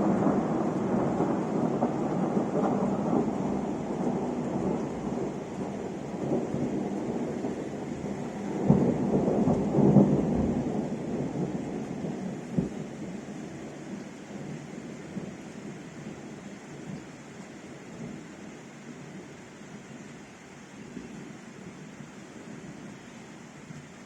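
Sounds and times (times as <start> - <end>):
thunder rumbling: 0.0 - 16.9
steady rain: 0.0 - 24.0.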